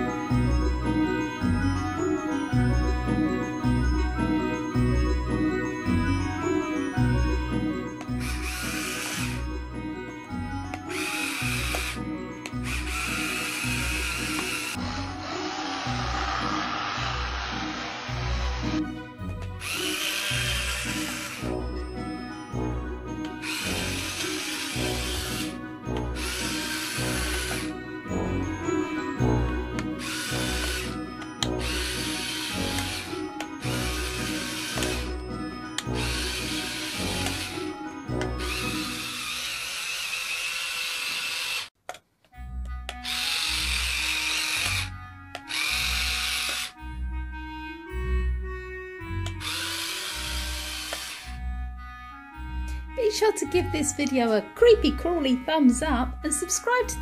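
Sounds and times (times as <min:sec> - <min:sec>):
toy gear motor whirring: 0:08.0 - 0:09.5, 0:10.8 - 0:18.8, 0:19.6 - 0:21.6, 0:23.3 - 0:27.7, 0:29.9 - 0:41.8, 0:42.9 - 0:46.8, 0:49.2 - 0:51.4.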